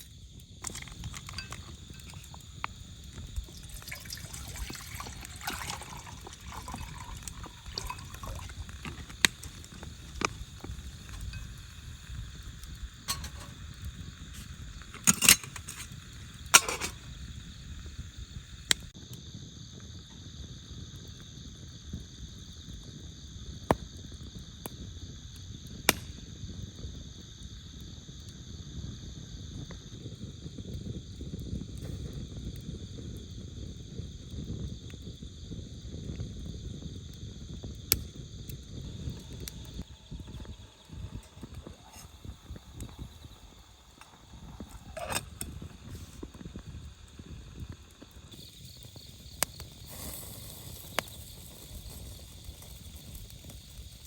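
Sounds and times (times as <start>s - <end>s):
sharp crackles and clicks: 0.0s - 18.9s, 37.8s - 54.0s
night insects trilling: 0.0s - 54.0s.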